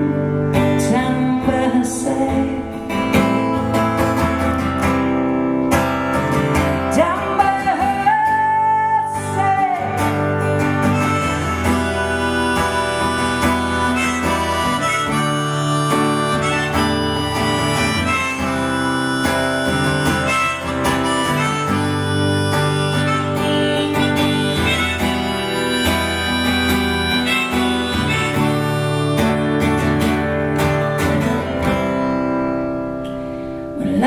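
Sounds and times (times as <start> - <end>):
acoustic guitar: 0.0 - 34.0
harmonica solo: 5.6 - 32.7.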